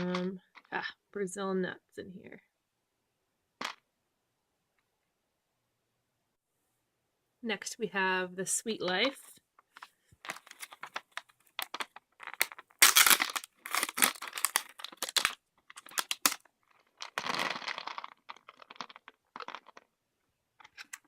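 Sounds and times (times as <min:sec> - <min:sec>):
snack packaging crinkling: 0:10.3 - 0:19.9.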